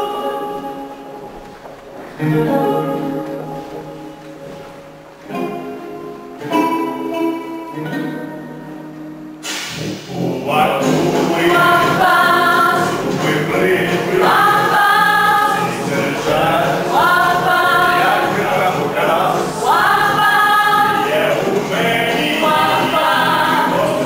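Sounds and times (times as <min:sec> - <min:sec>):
group of voices singing: 0:00.0 - 0:01.2, 0:09.6 - 0:24.0.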